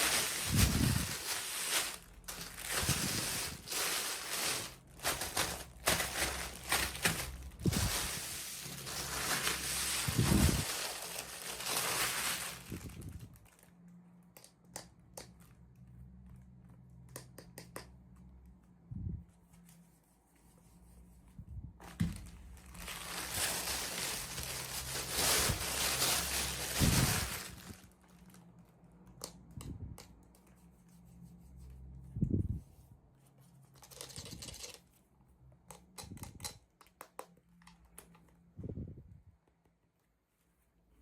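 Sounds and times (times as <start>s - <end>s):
plastic packaging tearing: 0.0s - 13.6s, 22.0s - 28.3s
plastic crinkling: 0.0s - 13.8s, 21.8s - 28.5s.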